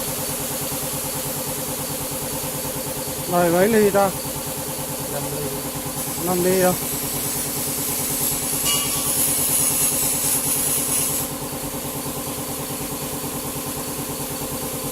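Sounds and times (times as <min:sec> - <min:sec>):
saw motor running: 0:02.9 - 0:14.9
saw cutting aluminium with high hiss: 0:03.1 - 0:04.4, 0:05.1 - 0:11.6.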